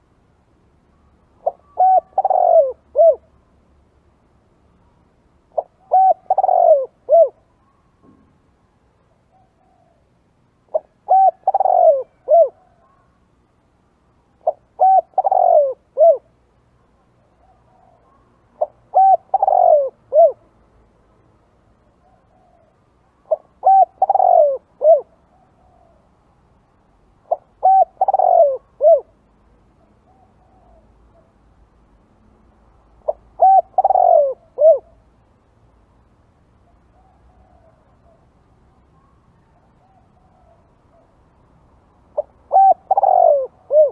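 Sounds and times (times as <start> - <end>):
dove cooing: 1.4 - 3.3, 5.5 - 7.5, 9.2 - 10.1, 10.7 - 13.2, 14.4 - 16.4, 17.2 - 20.4, 22.0 - 26.1, 27.2 - 29.2, 29.8 - 31.3, 33.0 - 35.1, 36.7 - 38.3, 39.0 - 41.2, 42.1 - 43.9.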